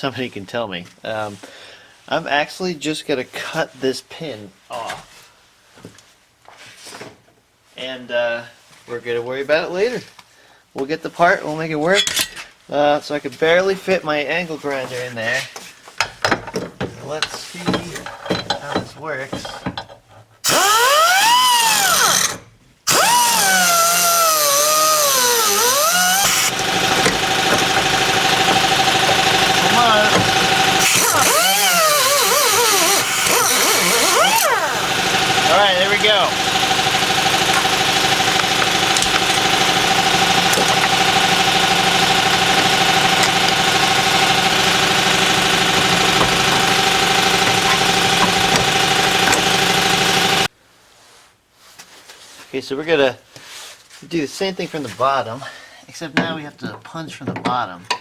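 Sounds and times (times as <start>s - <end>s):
angle grinder cutting metal: 20.4s - 50.5s.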